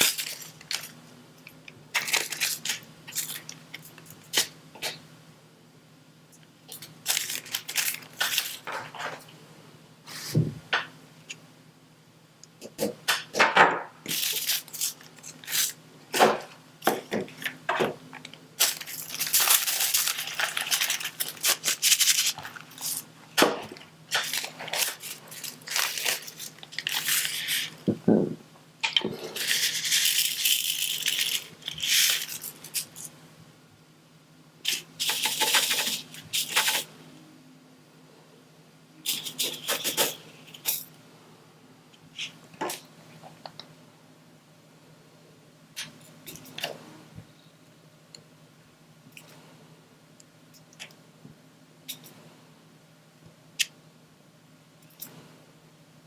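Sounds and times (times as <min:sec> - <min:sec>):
crinkly rustling: 0:00.0 - 0:01.0, 0:01.9 - 0:04.5, 0:06.7 - 0:09.2, 0:17.2 - 0:27.9, 0:29.4 - 0:33.1.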